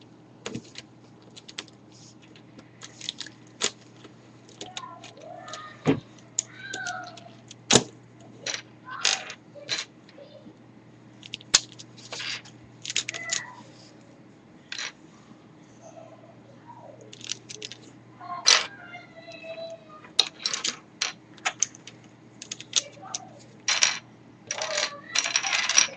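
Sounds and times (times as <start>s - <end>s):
plastic pieces clicking: 0.5s - 3.8s, 6.4s - 7.8s, 11.2s - 13.5s, 17.1s - 17.9s, 20.2s - 25.9s.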